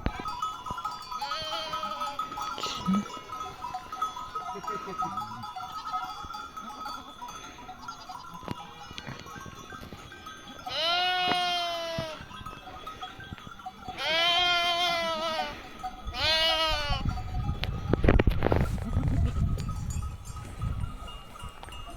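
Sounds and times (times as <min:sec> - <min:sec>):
sheep bleating: 0:01.2 - 0:03.0, 0:10.6 - 0:12.3, 0:13.9 - 0:17.1.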